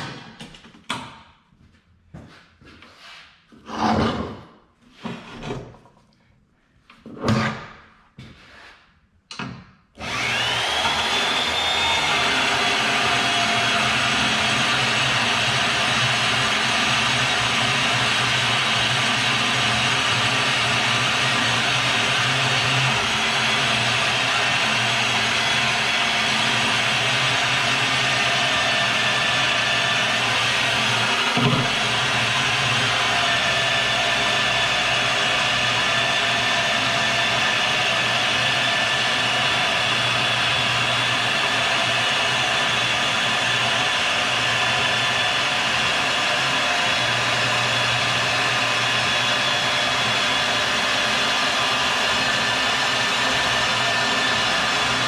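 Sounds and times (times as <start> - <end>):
electric motor whining: 10.0 - 55.0.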